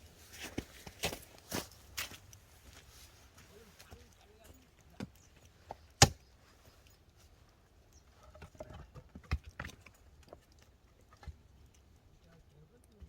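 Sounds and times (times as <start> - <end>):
firewood splitting knock: 6.0 - 6.2
wooden knocks and clatter: 8.2 - 11.8.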